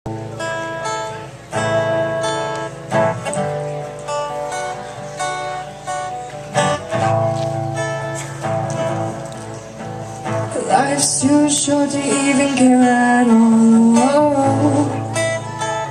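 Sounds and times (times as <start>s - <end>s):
guitar chords ringing: 0.1s - 15.9s.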